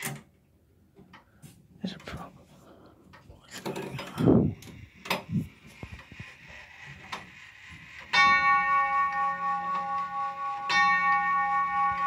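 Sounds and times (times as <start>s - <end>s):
clock works clicking: 4.0s - 12.0s
grandfather clock chime ringing: 7.8s - 12.0s.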